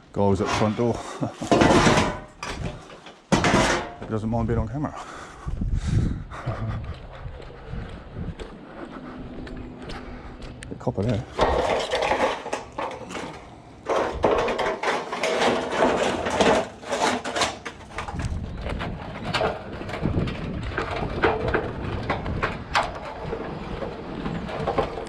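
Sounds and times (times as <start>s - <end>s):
scrap metal clanking and scraping: 0.1s - 4.4s, 10.8s - 25.0s.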